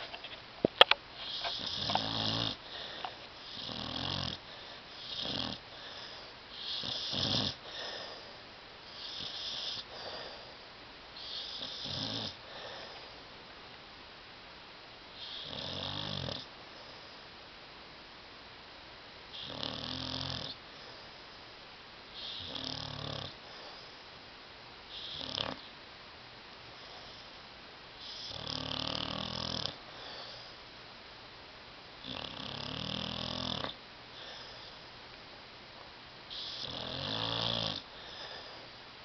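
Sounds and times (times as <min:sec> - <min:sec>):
dog snoring: 0:01.2 - 0:08.2, 0:08.9 - 0:10.4, 0:11.2 - 0:13.0, 0:15.2 - 0:17.0, 0:19.3 - 0:20.9, 0:22.2 - 0:23.9, 0:24.9 - 0:25.7, 0:28.0 - 0:30.5, 0:32.0 - 0:34.8, 0:36.3 - 0:38.6.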